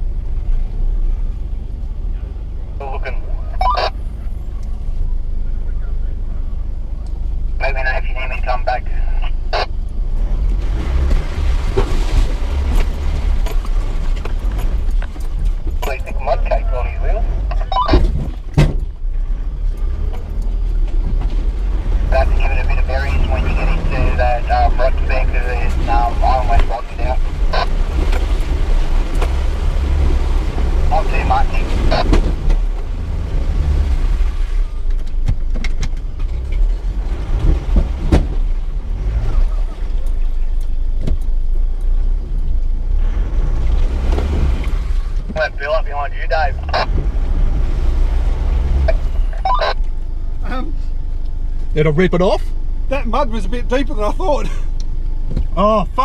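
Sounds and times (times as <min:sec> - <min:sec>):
engine and drivetrain rumble: 0:00.0 - 0:56.0
sharp knocks and clunks: 0:17.8 - 0:19.0, 0:34.9 - 0:38.5.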